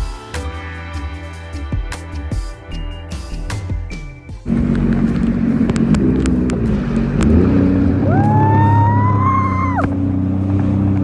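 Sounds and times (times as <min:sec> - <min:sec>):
high whine: 0:02.8 - 0:10.1
jet ski engine running: 0:04.5 - 0:11.0.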